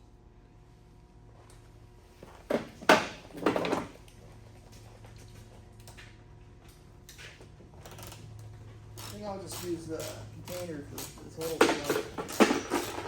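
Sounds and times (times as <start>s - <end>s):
plastic trim parts knocking and clattering: 11.5s - 13.0s.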